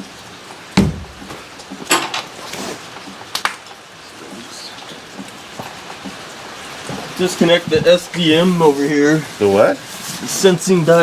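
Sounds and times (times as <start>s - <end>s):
steady hiss: 0.0s - 11.0s
soft knock: 0.8s - 1.4s.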